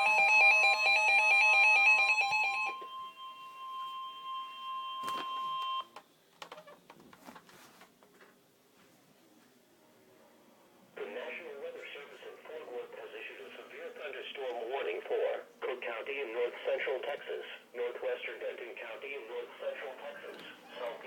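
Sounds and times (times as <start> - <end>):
steady warning tone: 0.0 - 6.0.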